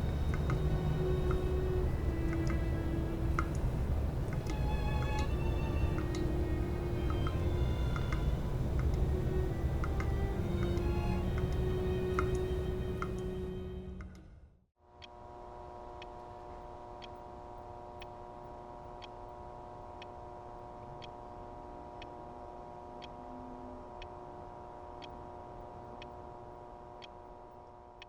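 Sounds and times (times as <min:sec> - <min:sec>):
clock ticking: 0:00.0 - 0:13.3
electrical hum: 0:00.0 - 0:14.4, 0:15.0 - 0:28.0.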